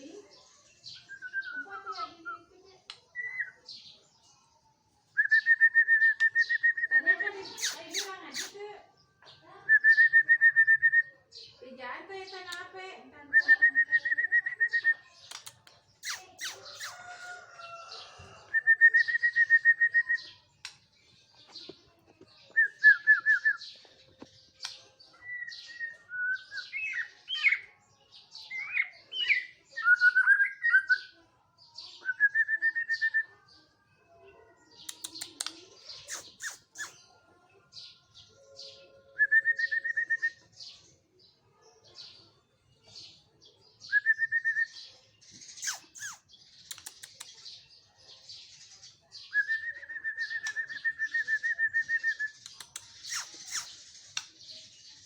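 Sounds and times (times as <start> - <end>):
songbird singing trilled phrases: 0.0 - 4.4, 5.2 - 11.6, 12.2 - 33.3, 34.7 - 37.2, 43.0 - 55.0
sharp high bird chips: 7.6 - 8.6, 15.2 - 17.1, 34.8 - 37.0, 45.4 - 47.4, 52.4 - 54.5.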